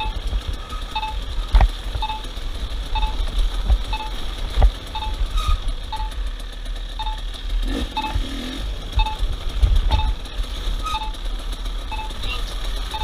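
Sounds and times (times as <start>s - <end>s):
vehicle engine rumble: 0.0s - 13.0s
short electronic beep: 11.9s - 12.4s.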